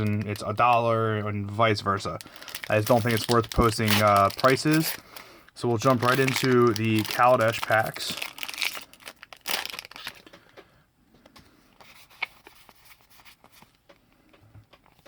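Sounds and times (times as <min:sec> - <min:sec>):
foil wrapper crinkling and tearing: 0:00.0 - 0:01.0, 0:01.6 - 0:10.4.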